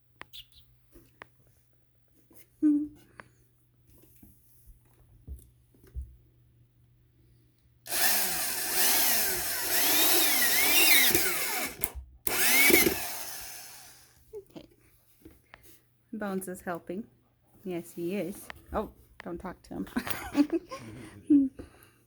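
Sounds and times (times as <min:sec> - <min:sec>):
power drill running: 0:07.9 - 0:14.2.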